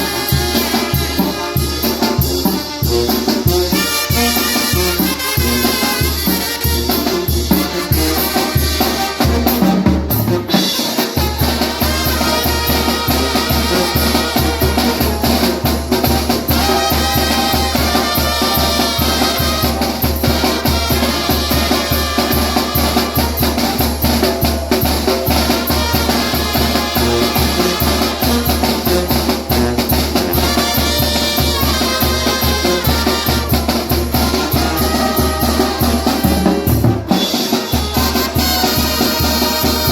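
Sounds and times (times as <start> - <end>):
drum kit: 0.0 - 39.9
trumpet: 0.0 - 39.9.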